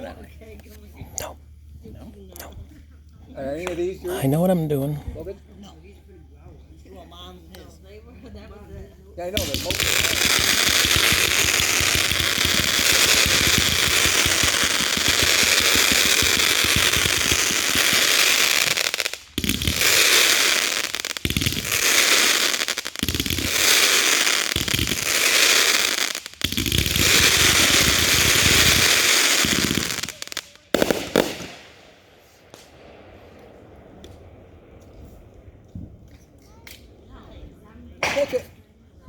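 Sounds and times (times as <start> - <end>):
fireworks crackling and popping: 9.2 - 37.5.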